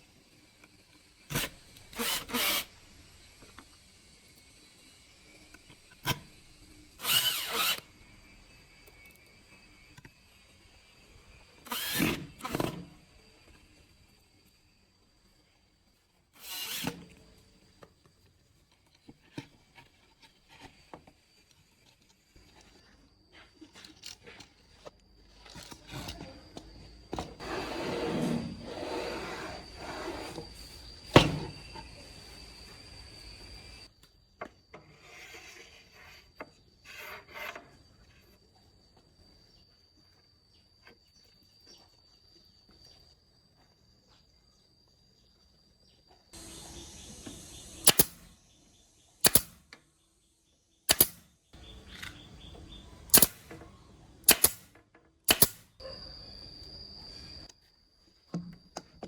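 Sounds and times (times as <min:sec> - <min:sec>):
wood scraping: 0:27.4 - 0:31.0.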